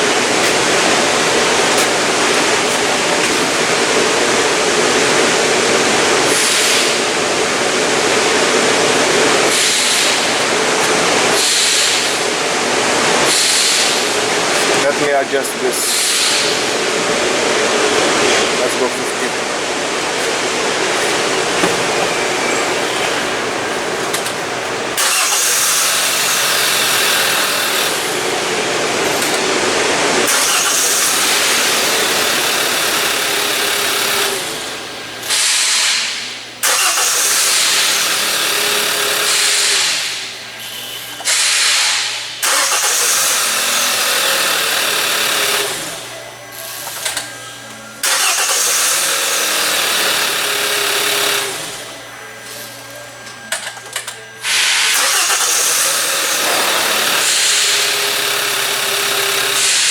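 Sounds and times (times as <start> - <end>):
car engine starting and running: 0.0 - 7.0, 18.2 - 35.8, 36.6 - 40.0, 42.4 - 46.0, 48.0 - 51.8, 54.5 - 59.7.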